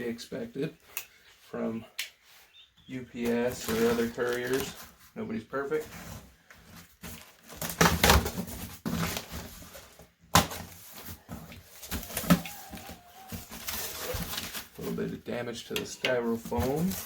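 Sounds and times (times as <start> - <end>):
cardboard and styrofoam rustling: 3.2 - 15.4, 16.1 - 17.0.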